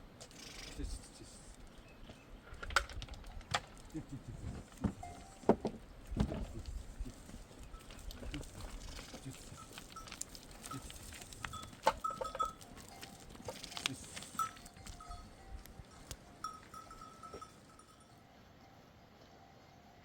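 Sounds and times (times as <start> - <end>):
sheep bells clinking: 3.1 - 4.1, 4.9 - 6.0, 6.6 - 20.0.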